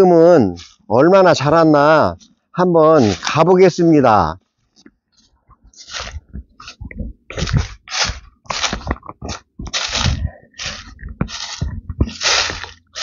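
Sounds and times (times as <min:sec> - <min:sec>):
footsteps crunching on dry leaves: 0:00.0 - 0:03.9, 0:05.7 - 0:13.0.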